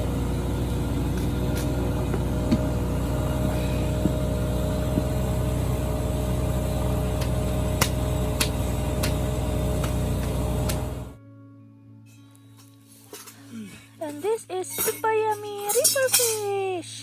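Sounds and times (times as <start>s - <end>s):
vehicle engine rumbling: 0.0s - 11.2s.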